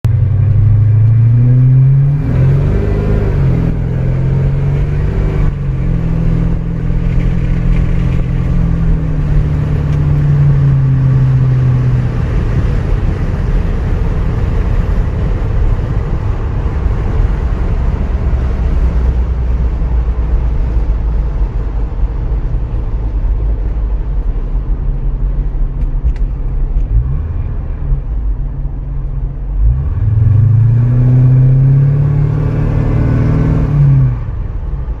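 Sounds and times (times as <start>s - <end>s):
car engine running: 0.0s - 29.8s.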